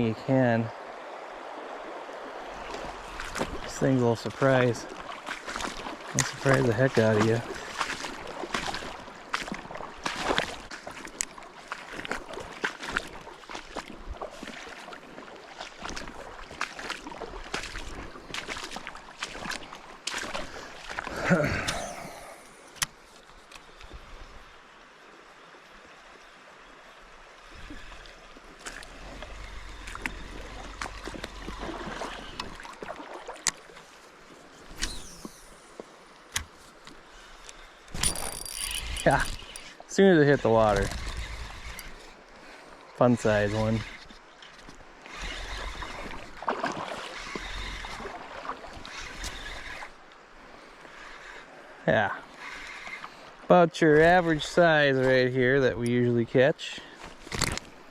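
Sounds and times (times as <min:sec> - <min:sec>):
river water running: 0:00.0 - 0:57.9
sharp click: 0:38.0 - 0:39.7.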